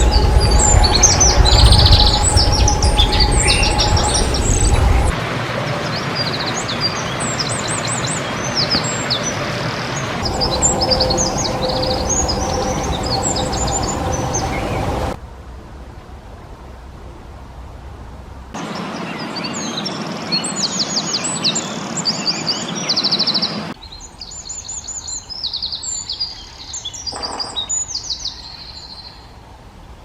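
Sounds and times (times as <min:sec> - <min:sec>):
wren singing: 0:00.0 - 0:05.2, 0:06.2 - 0:15.2
low rumble: 0:00.0 - 0:05.8, 0:10.0 - 0:18.6.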